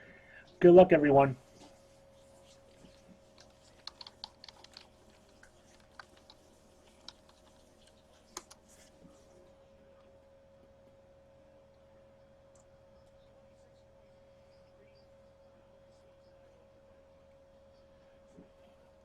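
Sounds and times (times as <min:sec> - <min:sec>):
faint steady hum: 0:00.0 - 0:19.0
typing on keyboard: 0:02.8 - 0:08.6.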